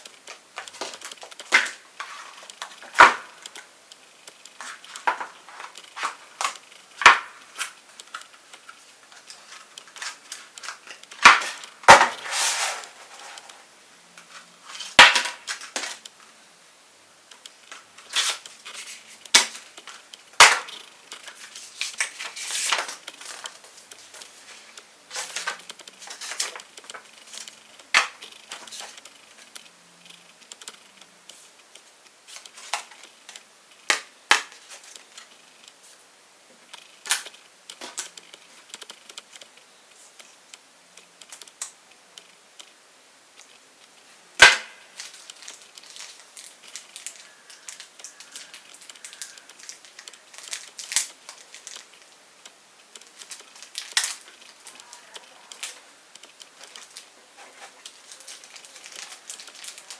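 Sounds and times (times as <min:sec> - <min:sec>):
packaging rustling: 0:00.0 - 0:16.1, 0:17.3 - 0:29.6, 0:32.3 - 0:35.4, 0:43.4 - 0:52.2, 0:52.9 - 0:59.9
packaging clicks and snaps: 0:00.2 - 0:13.6, 0:14.2 - 0:16.1, 0:17.3 - 0:30.9, 0:31.7 - 0:35.4, 0:44.4 - 0:59.9.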